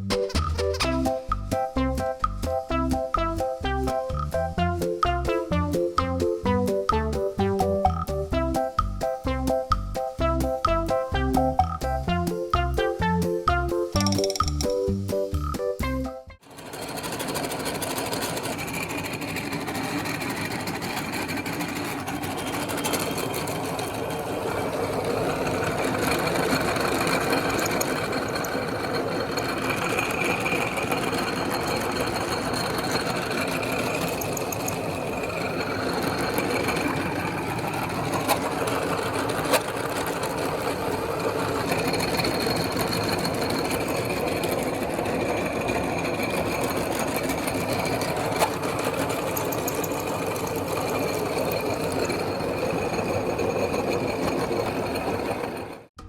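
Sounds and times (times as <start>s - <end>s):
electric meat grinder running: 16.4s - 55.7s.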